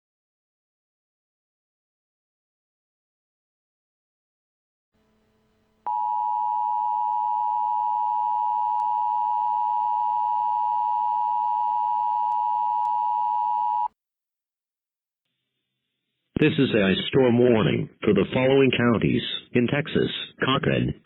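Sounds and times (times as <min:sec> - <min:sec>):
faint hum: 0:05.0 - 0:13.9
two-tone alert signal: 0:05.9 - 0:13.9.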